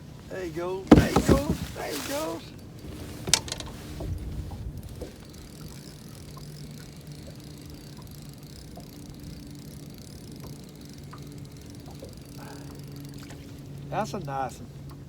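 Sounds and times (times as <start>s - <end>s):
boat motor humming: 0.0s - 15.0s
low bump: 0.8s - 2.3s
faint ticks: 2.8s - 14.0s, 14.8s - 15.0s.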